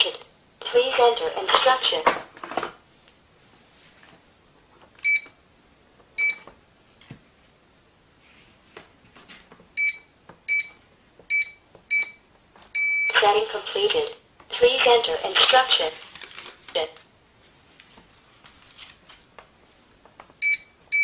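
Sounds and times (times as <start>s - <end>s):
keypad beeps: 5.0s - 5.3s, 6.2s - 6.5s, 9.8s - 12.2s, 12.8s - 13.2s, 20.4s - 21.0s.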